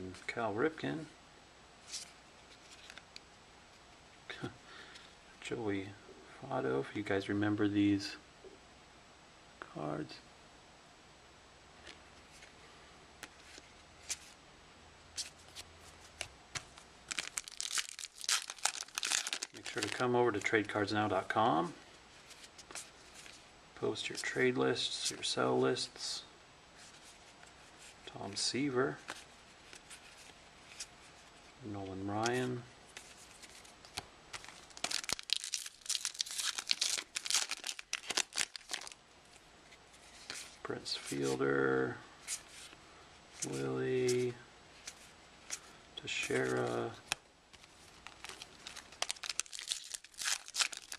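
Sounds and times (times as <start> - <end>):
trading cards flipped by hand: 1.9 - 3.2, 15.2 - 20.5, 32.2 - 39.0
wrapper tearing and crinkling: 17.0 - 20.4, 34.3 - 39.0, 47.6 - 50.9.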